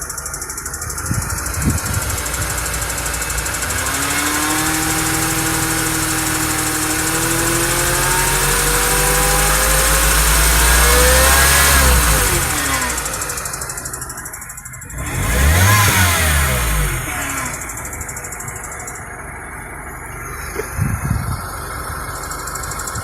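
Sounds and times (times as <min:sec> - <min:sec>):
car engine revving: 0:00.0 - 0:23.0
steady engine ticking: 0:00.0 - 0:23.0.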